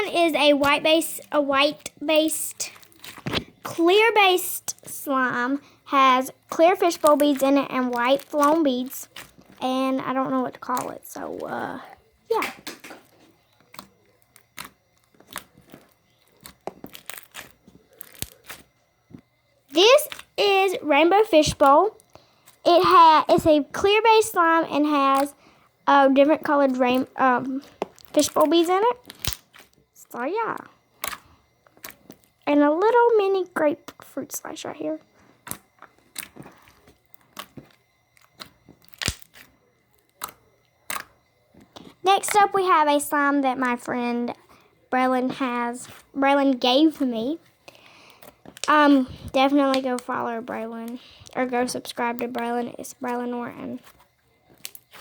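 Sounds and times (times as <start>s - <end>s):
crackles and clicks: 0.0s - 55.0s
slime squished by hand: 2.2s - 3.8s, 6.7s - 9.9s, 13.7s - 18.7s, 27.6s - 29.7s, 31.0s - 32.4s, 35.4s - 39.5s, 40.2s - 42.0s.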